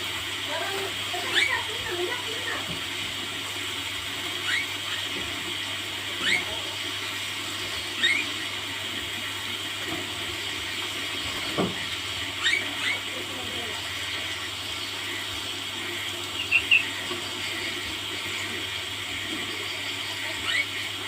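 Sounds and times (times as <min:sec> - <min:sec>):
small bird chirping: 0:16.3 - 0:17.7.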